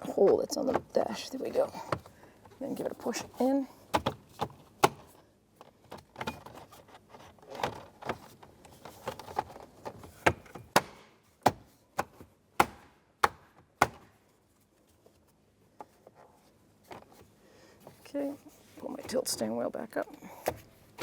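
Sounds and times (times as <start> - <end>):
quiet handling of plastic: 14.1 - 21.0.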